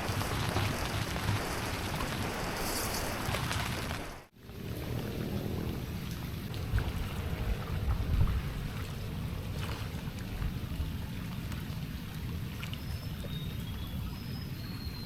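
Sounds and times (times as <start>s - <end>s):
rain hissing: 0.0s - 7.9s
wind buffeting microphone: 0.0s - 12.6s.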